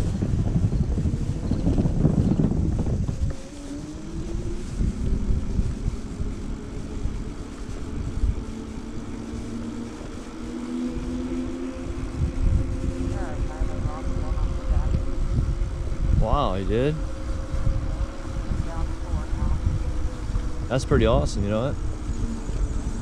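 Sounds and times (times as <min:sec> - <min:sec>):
electric motor whine: 0:00.0 - 0:23.0
tyres rumbling on asphalt: 0:00.0 - 0:23.0
wind buffeting microphone: 0:00.0 - 0:23.0.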